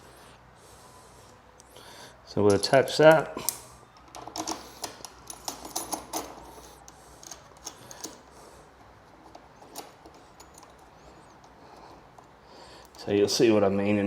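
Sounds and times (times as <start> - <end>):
metal bracket clicks and clinks: 2.5 - 6.6.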